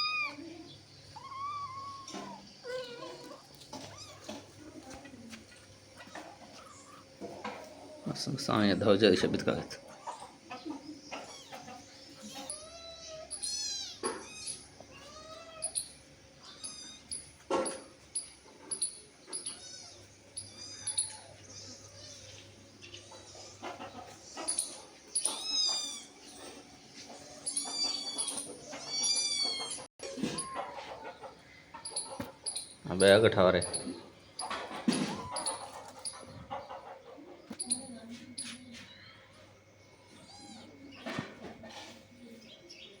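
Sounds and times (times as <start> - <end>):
young animals squeaking: 0.0 - 43.0
louder lower animal cry: 1.1 - 4.3.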